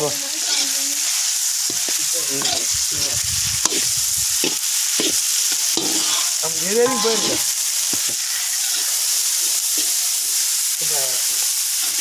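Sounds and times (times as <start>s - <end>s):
food sizzling in hot oil: 0.0s - 12.0s
ladle scraping a pan: 0.4s - 9.0s.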